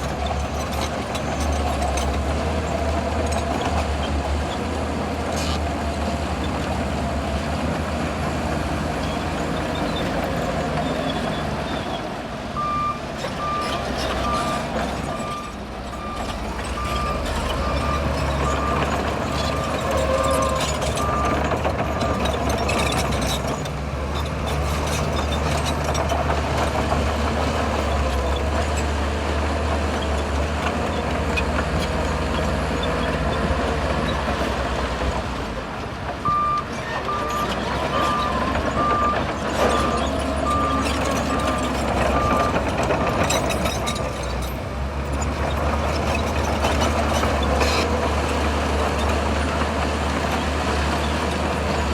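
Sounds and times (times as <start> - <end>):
bulldozer diesel engine running: 0.0 - 51.9
reversing alarm beeping: 12.6 - 22.2, 36.3 - 42.6.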